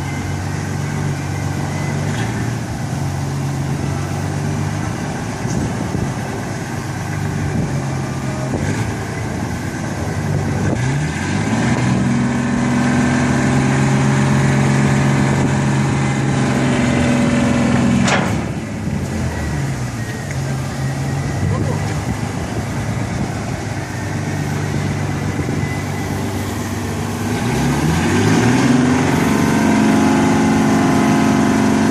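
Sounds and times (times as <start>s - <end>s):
truck engine idling and revving: 0.0s - 31.9s.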